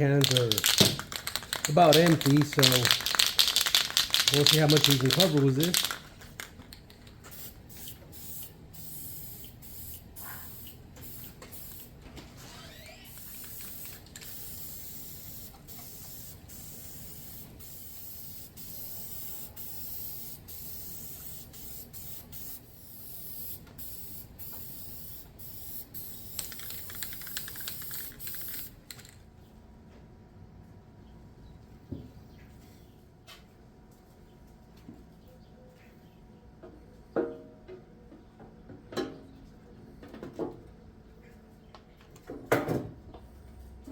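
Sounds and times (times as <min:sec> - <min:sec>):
spray paint can hissing: 0:00.2 - 0:06.6, 0:07.2 - 0:11.9, 0:12.8 - 0:29.0.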